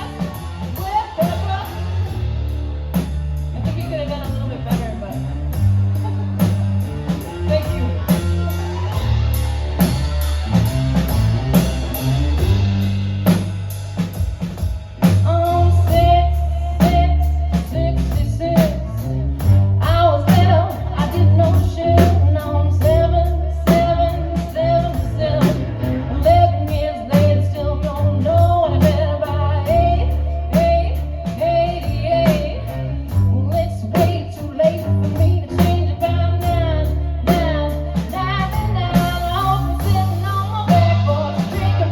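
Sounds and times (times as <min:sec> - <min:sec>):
drum kit beat: 0:00.0 - 0:41.9
guitar: 0:00.0 - 0:41.9
person singing: 0:19.8 - 0:41.9.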